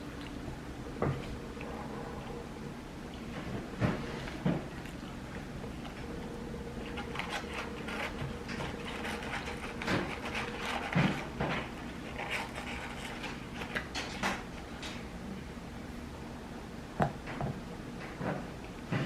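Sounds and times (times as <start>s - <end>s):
chewing and mouth noises: 0.0s - 15.0s
clicks and knocks of food handled: 6.8s - 15.0s.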